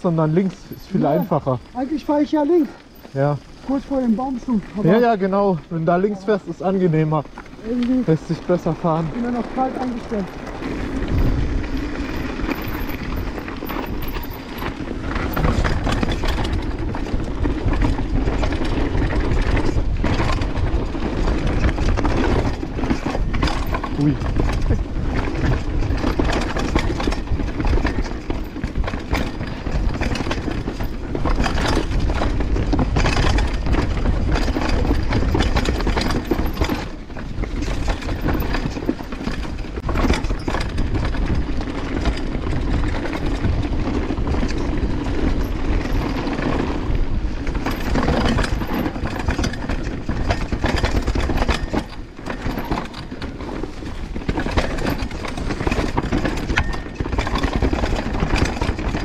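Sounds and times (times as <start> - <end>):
bike tyres rushing over dirt: 0.0 - 59.0
bike knocks and clatters: 6.6 - 59.0
chain rattling against frame: 11.1 - 17.2, 21.6 - 43.6, 44.5 - 59.0.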